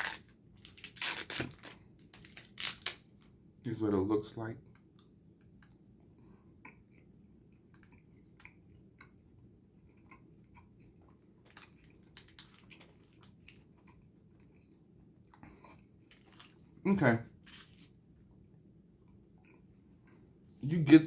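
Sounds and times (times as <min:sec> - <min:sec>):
chewing and mouth clicks: 0:06.5 - 0:16.8, 0:17.4 - 0:20.3.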